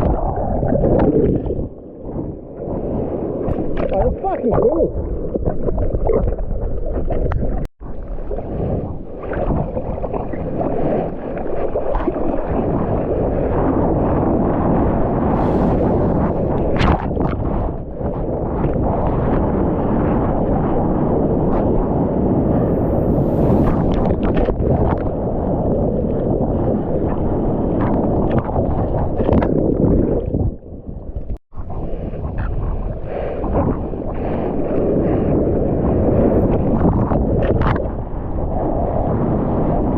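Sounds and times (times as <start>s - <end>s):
seawater sloshing and rushing: 0.0s - 39.9s
wind buffeting microphone: 0.0s - 39.9s
surf water rushing and splashing: 7.8s - 17.7s, 22.4s - 25.5s, 33.0s - 36.9s
heavy low rumble: 15.2s - 18.5s.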